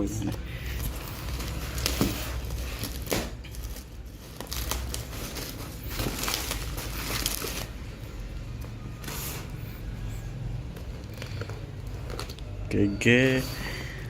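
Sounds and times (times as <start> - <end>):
packaging crinkling and tearing: 0.4 - 8.3, 10.8 - 12.6.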